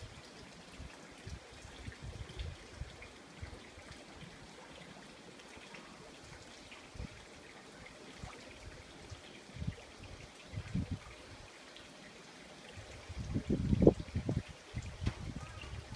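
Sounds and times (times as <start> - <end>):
trickle of running water: 0.0 - 15.9
wind thumps on microphone: 13.1 - 15.9.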